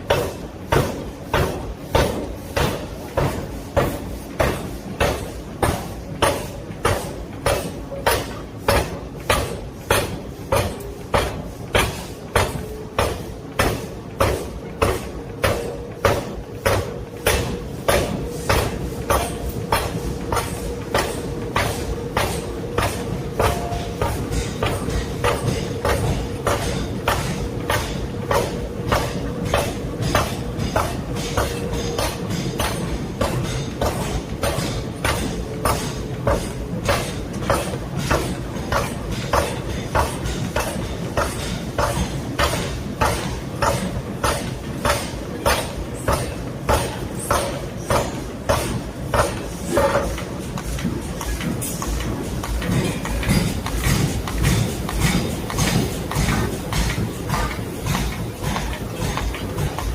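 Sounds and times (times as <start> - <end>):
hammer blows on hot metal: 0.0 - 59.9.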